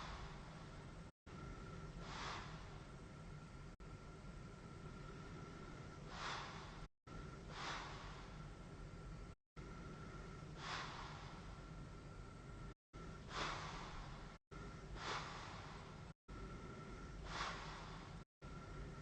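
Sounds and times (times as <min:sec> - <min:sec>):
steady low hum: 0:00.0 - 0:19.0
airy breaths through mask: 0:01.4 - 0:03.0, 0:04.7 - 0:08.6, 0:09.7 - 0:11.9, 0:13.0 - 0:19.0.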